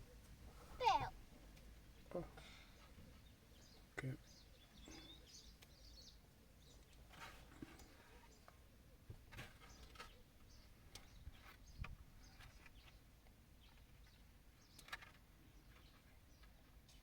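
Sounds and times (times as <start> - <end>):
faint bird chirps: 2.0 - 13.0.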